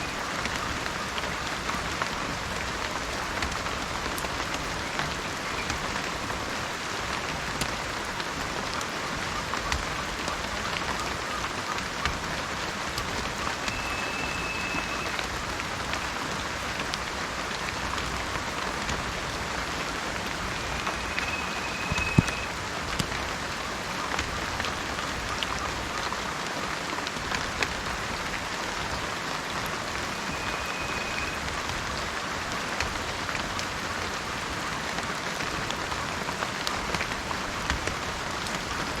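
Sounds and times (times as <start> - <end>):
gentle rain falling: 0.0 - 39.0
raindrops ticking: 0.1 - 39.0
high steady whistle: 13.6 - 15.4, 20.4 - 22.6, 30.0 - 31.5.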